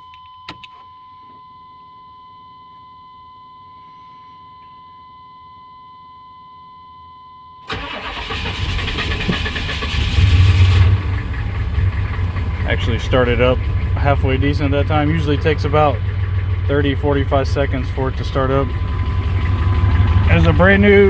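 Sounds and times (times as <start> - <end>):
diesel engine cranking and starting: 7.7 - 21.0.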